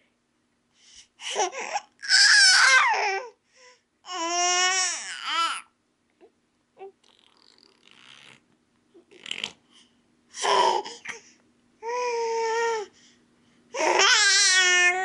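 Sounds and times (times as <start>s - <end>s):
baby babbling: 1.3s - 3.4s, 4.1s - 5.7s, 10.4s - 11.2s, 13.8s - 15.0s
baby squealing: 2.0s - 3.1s.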